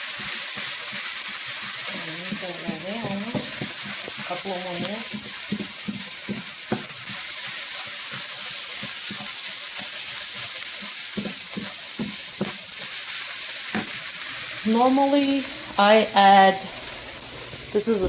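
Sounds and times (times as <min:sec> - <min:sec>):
onions sizzling in a pan: 0:00.0 - 0:18.0
utensil knocking against pan: 0:02.3 - 0:07.2, 0:08.1 - 0:12.6.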